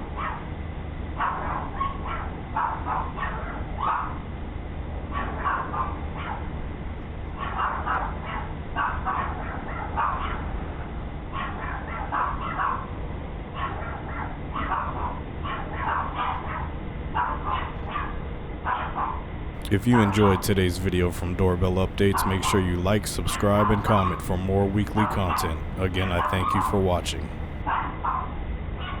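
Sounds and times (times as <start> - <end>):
dog barking: 1.2 - 4.2, 5.2 - 6.5, 7.4 - 10.5, 11.4 - 12.9, 13.6 - 19.2, 23.4 - 27.8
steady low hum: 19.6 - 27.6.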